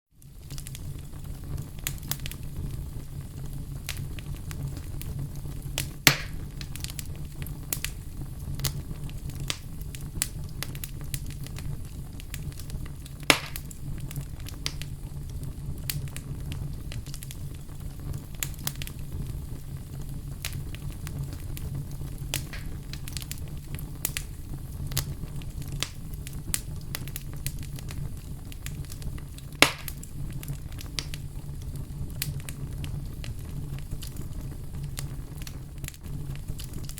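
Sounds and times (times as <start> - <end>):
wood fire crackling: 0.1 - 36.9
loud fire pops: 0.2 - 36.9.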